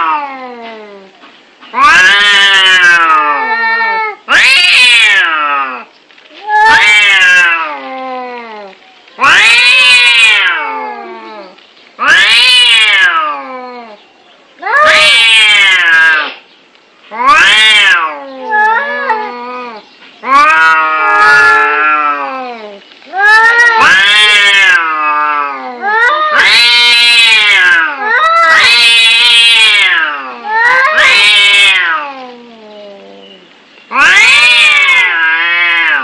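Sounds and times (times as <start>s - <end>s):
cats yowling: 0.0s - 1.1s, 1.7s - 14.0s, 14.6s - 16.4s, 17.1s - 36.0s.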